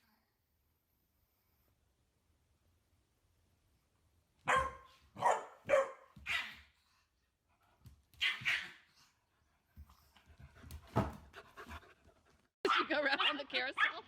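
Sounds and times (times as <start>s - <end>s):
small dog barking: 4.4s - 6.7s, 8.2s - 8.8s.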